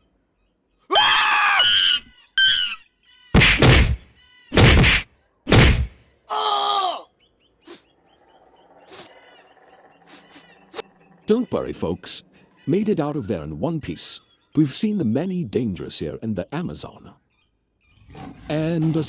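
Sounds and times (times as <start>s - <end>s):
whacking hits: 3.4s - 6.0s
man crying out and groaning: 6.3s - 7.1s.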